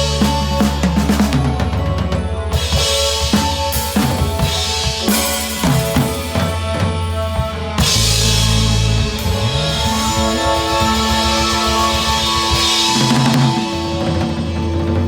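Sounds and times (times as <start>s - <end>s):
drum kit steady beat: 0.0s - 15.0s
guitar and bass notes: 0.0s - 15.0s.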